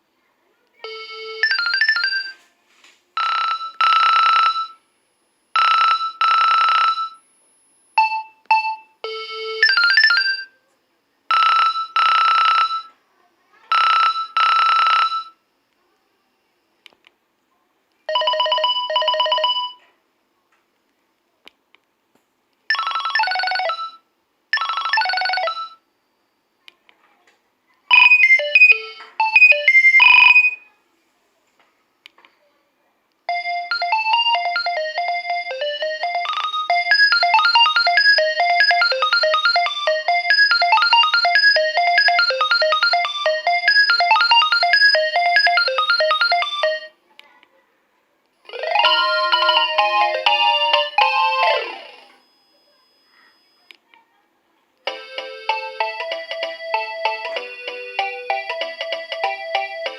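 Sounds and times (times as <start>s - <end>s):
mobile phone ringtones: 0.8s - 2.4s, 3.2s - 4.8s, 5.6s - 7.2s, 8.0s - 10.6s, 11.3s - 13.0s, 13.7s - 15.4s, 18.1s - 19.8s, 22.7s - 25.9s, 27.9s - 30.7s, 33.3s - 47.0s, 48.5s - 53.7s, 54.9s - 59.9s.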